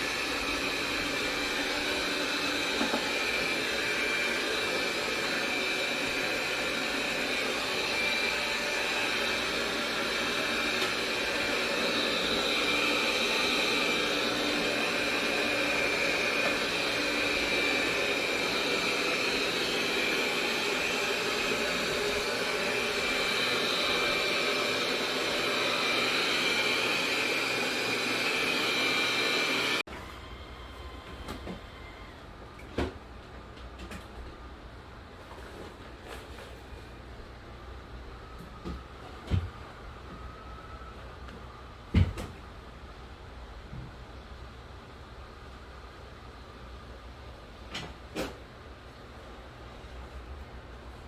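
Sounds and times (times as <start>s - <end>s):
robot vacuum whine: 0.0s - 32.3s.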